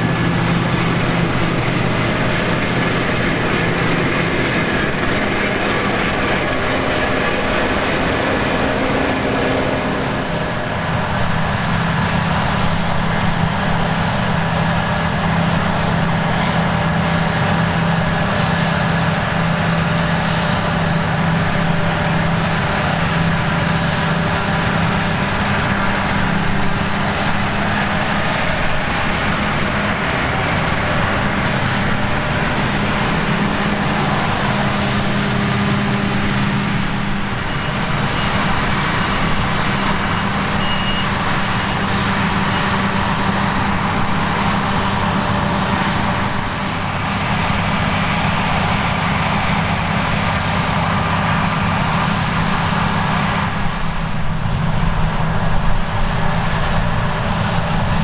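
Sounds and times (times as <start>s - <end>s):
threshing mechanical clatter: 0.0s - 16.1s
combine harvester engine drone: 0.0s - 58.0s.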